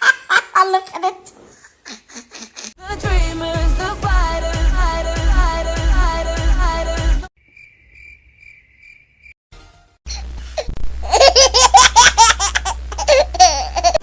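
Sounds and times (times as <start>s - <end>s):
high-pitched giggling laughter: 1.6s - 2.8s, 10.1s - 14.0s
music: 2.8s - 7.3s, 9.6s - 10.0s
cricket chirp sound effect: 7.4s - 9.4s.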